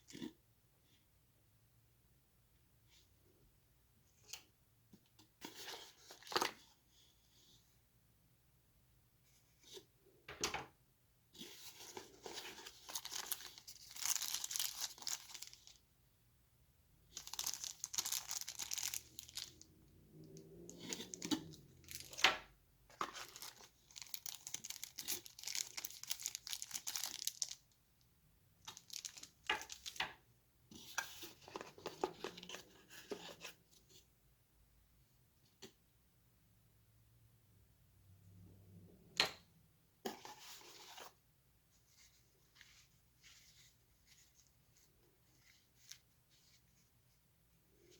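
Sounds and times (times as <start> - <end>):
plastic and paper crinkling: 11.6 - 15.8, 17.1 - 19.7, 20.7 - 22.3, 22.9 - 27.7, 28.6 - 30.0.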